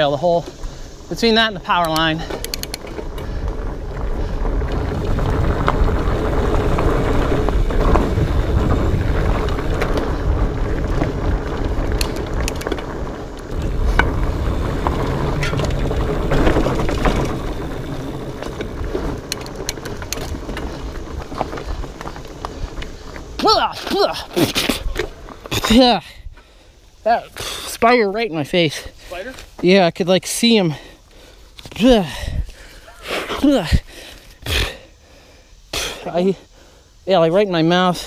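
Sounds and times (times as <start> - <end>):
bike rattling clicks and knocks: 0.0 - 25.9
bike tyres rumbling over dirt: 0.0 - 38.0.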